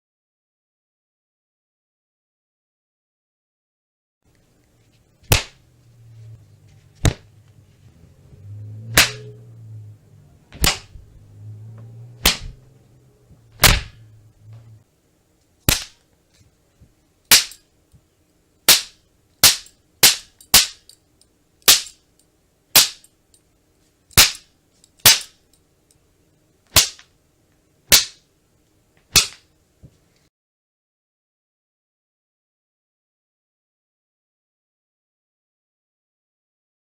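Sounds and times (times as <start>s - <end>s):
low hum: 4.4s - 15.3s
whip cracks: 5.3s - 5.6s, 8.9s - 9.3s, 10.6s - 11.0s, 12.2s - 12.6s, 13.6s - 14.0s, 15.7s - 16.0s, 17.3s - 17.6s, 18.7s - 20.8s, 21.7s - 21.9s, 22.8s - 23.0s, 24.2s - 24.4s, 25.0s - 25.3s, 26.7s - 27.1s, 27.9s - 28.2s, 29.1s - 29.5s.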